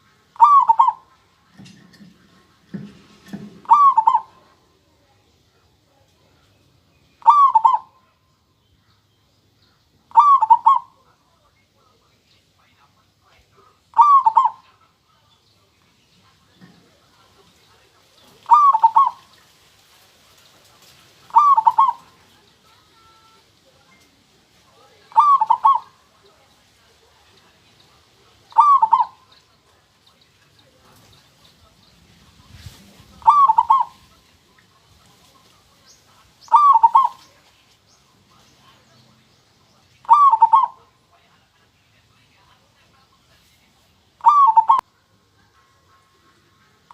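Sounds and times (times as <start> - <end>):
dove cooing: 0.0 - 1.8, 3.0 - 4.6, 7.2 - 8.0, 10.1 - 11.0, 13.9 - 14.8, 18.2 - 19.5, 20.8 - 24.0, 24.7 - 35.6, 36.4 - 37.4, 40.0 - 41.0, 44.2 - 44.9.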